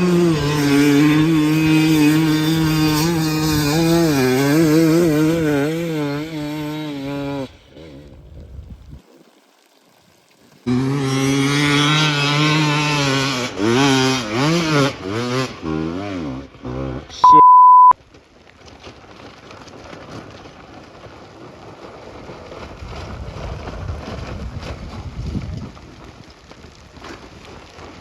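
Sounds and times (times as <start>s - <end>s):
dirt bike engine revving: 0.0s - 8.0s, 10.7s - 17.9s
loud steady beep: 17.2s - 18.0s.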